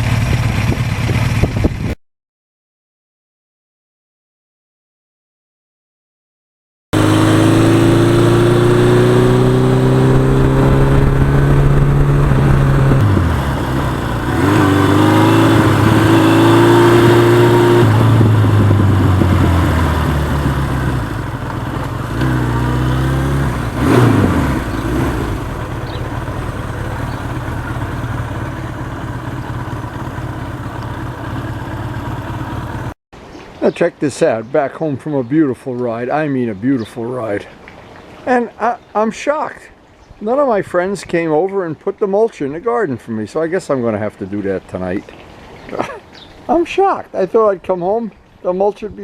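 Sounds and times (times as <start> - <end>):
motorcycle engine shifting gears: 0.0 - 2.0, 7.0 - 33.0
wind noise: 0.3 - 2.0, 7.4 - 27.3.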